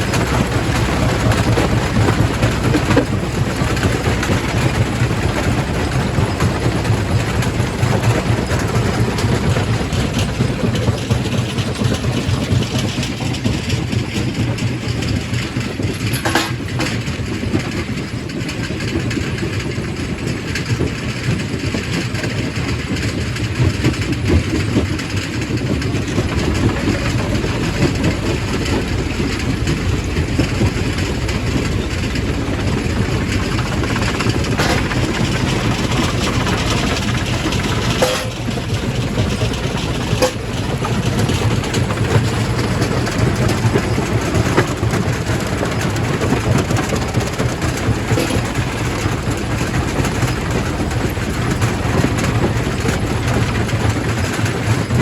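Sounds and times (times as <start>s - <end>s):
rock crusher low rumble: 0.0s - 55.0s
rock knocking inside crusher: 30.1s - 45.1s.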